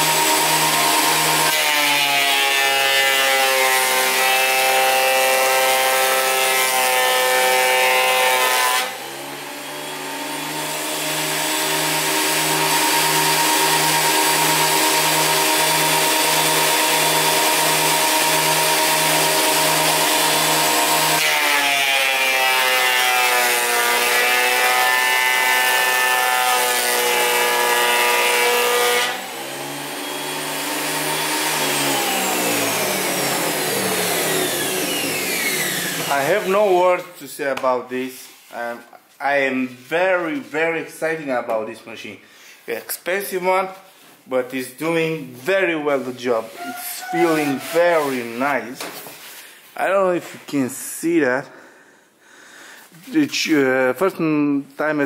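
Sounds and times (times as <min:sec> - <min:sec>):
thickness planer planing board: 0:00.0 - 0:36.9, 0:46.4 - 0:49.3.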